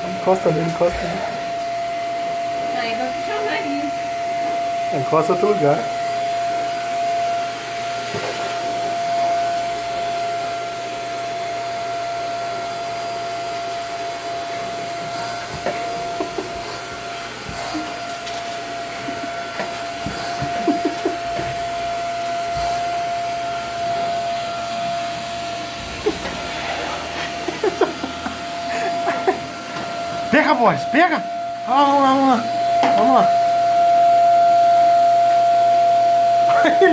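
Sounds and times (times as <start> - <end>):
vacuum cleaner motor whining: 0.0 - 36.9.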